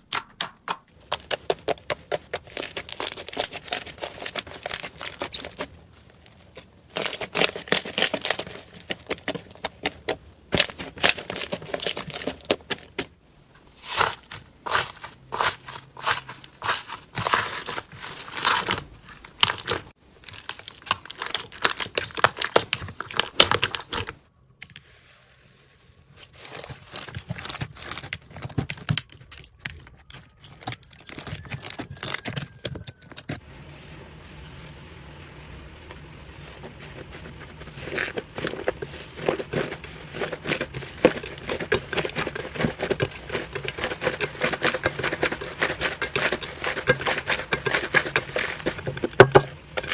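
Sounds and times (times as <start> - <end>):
slime squished crackling and popping: 18.3 - 24.1.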